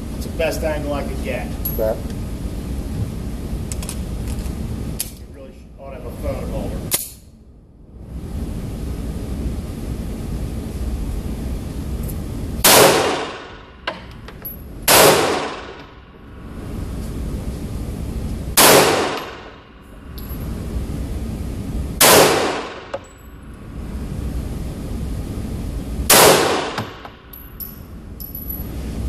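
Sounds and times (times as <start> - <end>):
gunshots: 12.6 - 13.6, 14.9 - 15.8, 18.6 - 19.6, 22.0 - 23.0, 26.1 - 27.0.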